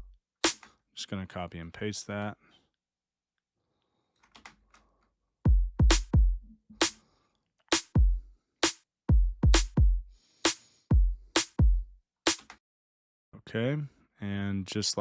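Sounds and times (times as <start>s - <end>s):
break-beat drum pattern: 0.0s - 0.6s, 5.5s - 7.0s, 7.7s - 12.4s.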